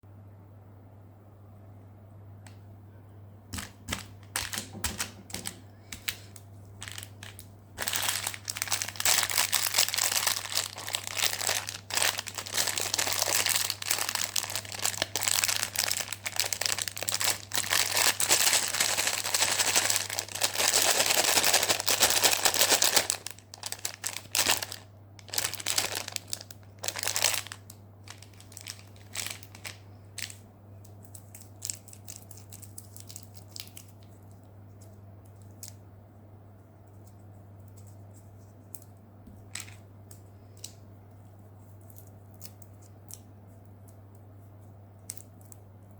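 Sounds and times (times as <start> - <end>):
faint low hum: 0.0 - 45.9
candy wrapper crinkling: 3.6 - 35.8, 39.4 - 40.8.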